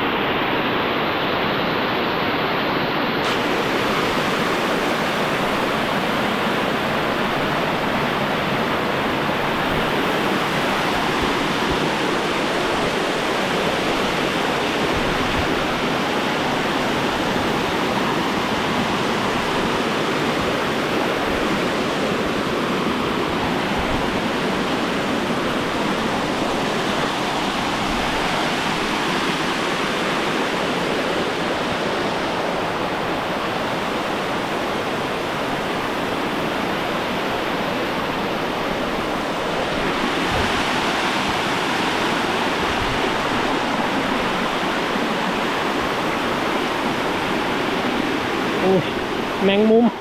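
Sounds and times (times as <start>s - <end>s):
waterfall rushing: 0.0s - 50.0s.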